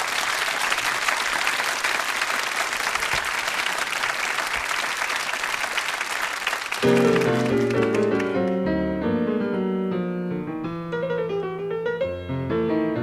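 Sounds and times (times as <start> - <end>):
audience applauding: 0.0 - 8.6.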